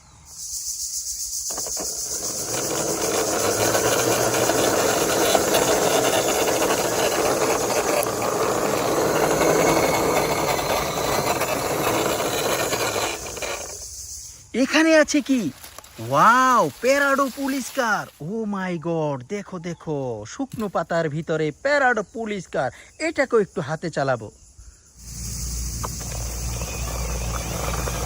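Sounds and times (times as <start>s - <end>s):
toy car rolling: 1.2s - 18.2s, 25.1s - 28.0s.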